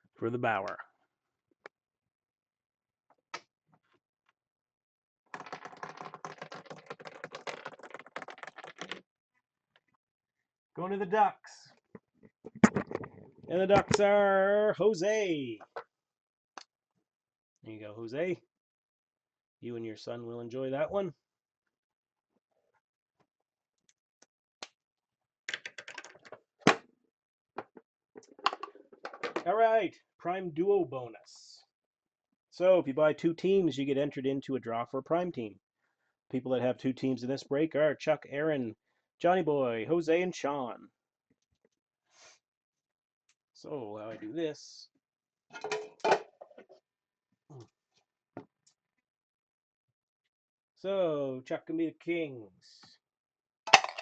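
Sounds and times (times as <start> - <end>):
irregular clicks and taps: 5.4 - 9.0.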